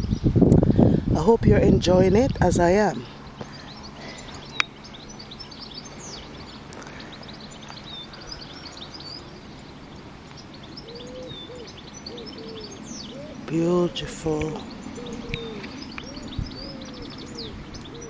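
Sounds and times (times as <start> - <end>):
small birds chirping: 1.7 - 18.0
cooing calls: 5.2 - 18.0.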